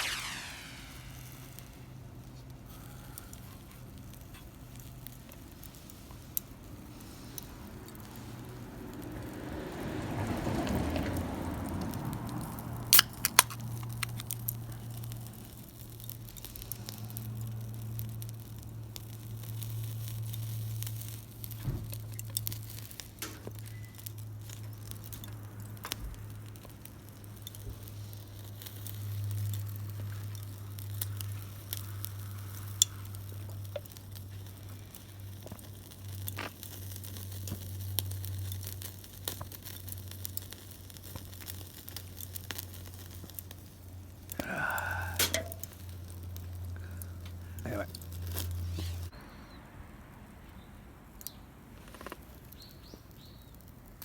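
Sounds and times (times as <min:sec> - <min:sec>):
rush of noise: 0:00.0 - 0:02.0
meat sizzling on a grill: 0:00.0 - 0:49.2, 0:52.2 - 0:54.0
wood fire crackling: 0:00.0 - 0:54.0.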